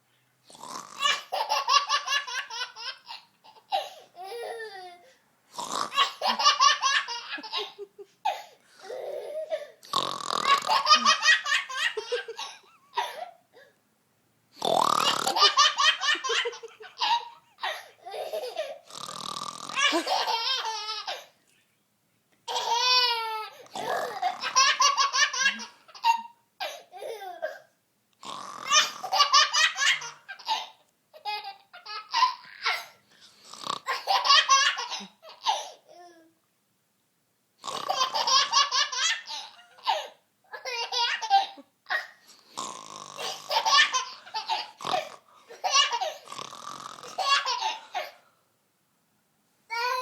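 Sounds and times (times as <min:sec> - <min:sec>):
toddler belly-laughing: 0:01.0 - 0:05.1, 0:05.9 - 0:09.8, 0:10.4 - 0:13.7, 0:15.0 - 0:18.9, 0:19.7 - 0:21.3, 0:22.5 - 0:27.7, 0:28.6 - 0:33.0, 0:33.8 - 0:36.2, 0:37.8 - 0:42.2, 0:43.2 - 0:46.3, 0:47.0 - 0:48.2
woman mock snoring: 0:09.9 - 0:10.8, 0:14.6 - 0:15.4, 0:18.9 - 0:20.0, 0:42.6 - 0:43.5, 0:46.3 - 0:47.2.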